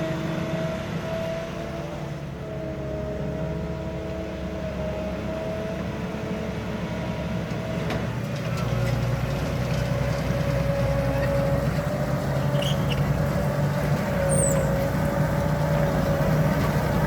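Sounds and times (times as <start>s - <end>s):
harvester engine drone: 0.0s - 17.0s
conveyors rumbling: 5.9s - 17.0s.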